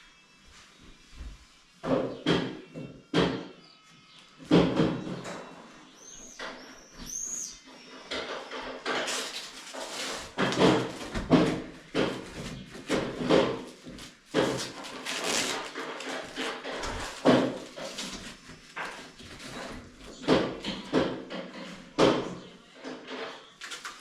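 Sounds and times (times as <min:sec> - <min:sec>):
tools and parts knocking and scraping: 0:06.3 - 0:24.0.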